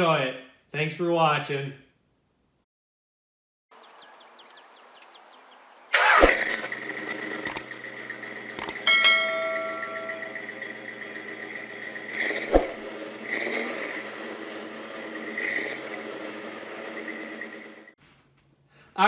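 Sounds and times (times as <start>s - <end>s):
engine starting and whining: 5.9s - 18.0s
engine cranking ticking: 6.0s - 17.9s
sharp clicks: 7.4s - 7.7s, 8.5s - 8.8s.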